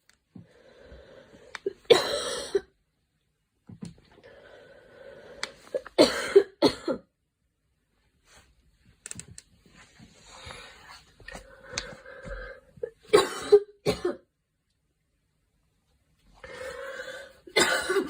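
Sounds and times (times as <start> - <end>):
girl coughing: 1.9 - 2.7, 6.0 - 7.1, 13.1 - 14.2, 17.5 - 18.0.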